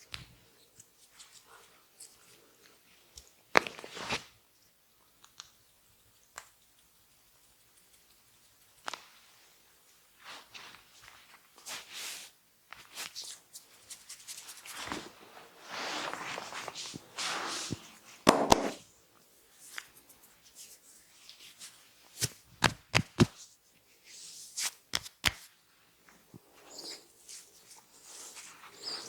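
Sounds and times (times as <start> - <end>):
hands rubbing oiled skin: 10.2 - 18.8, 19.5 - 23.5
sharp hand smacks on skin: 22.2 - 23.3, 24.9 - 25.5.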